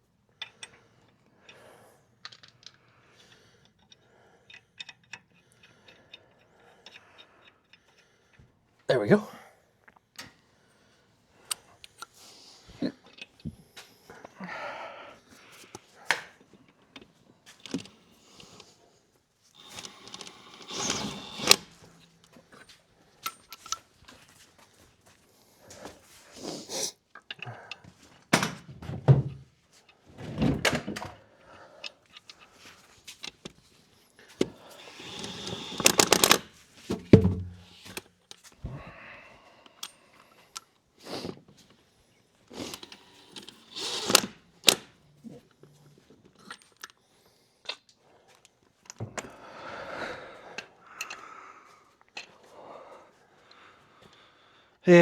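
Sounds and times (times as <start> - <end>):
tools clanking and thudding: 19.6 - 22.6, 34.4 - 38.1.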